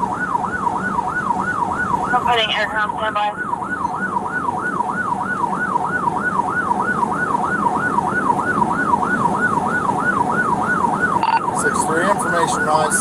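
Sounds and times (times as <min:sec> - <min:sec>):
police siren yelp: 0:00.0 - 0:13.0.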